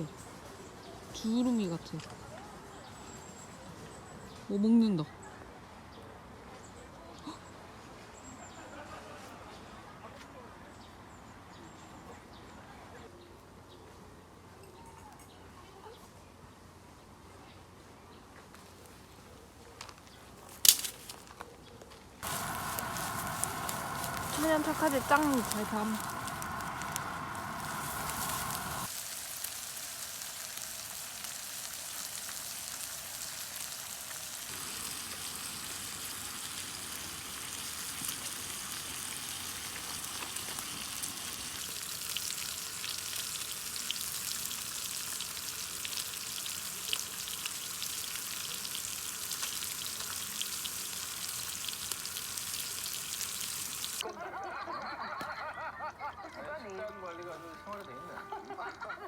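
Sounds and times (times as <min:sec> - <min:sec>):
meat sizzling on a hot grill: 0:22.2 - 0:54.0.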